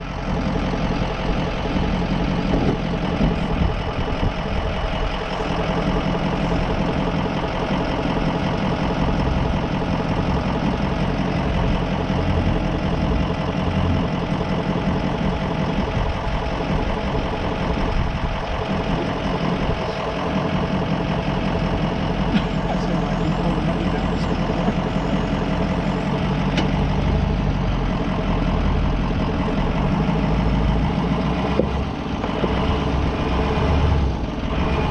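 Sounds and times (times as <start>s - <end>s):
van engine running: 0.0s - 34.9s.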